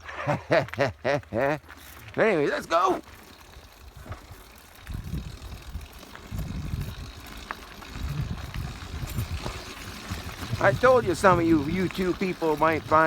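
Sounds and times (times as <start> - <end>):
wind buffeting microphone: 3.7 - 13.0.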